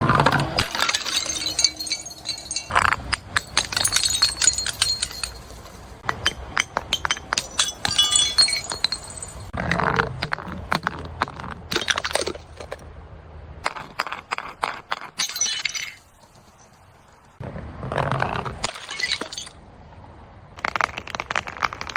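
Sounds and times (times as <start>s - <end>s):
glass bottles smashing: 0.0s - 9.6s, 15.1s - 16.7s, 18.6s - 19.6s
glass shards tinkling: 0.2s - 9.6s, 15.2s - 16.7s, 18.7s - 19.6s.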